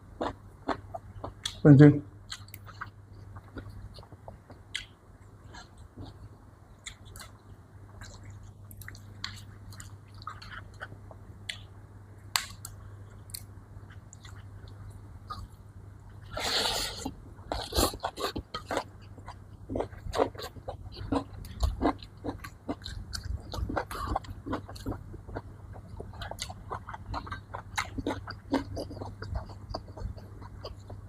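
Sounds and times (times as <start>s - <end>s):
person chewing: 0.2s - 1.6s, 2.3s - 11.7s, 12.3s - 15.6s, 16.2s - 31.0s.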